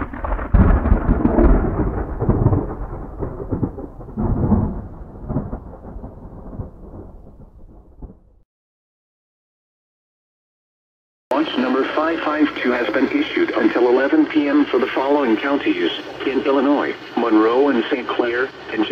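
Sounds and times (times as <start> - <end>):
rolling thunder: 0.0 - 8.4.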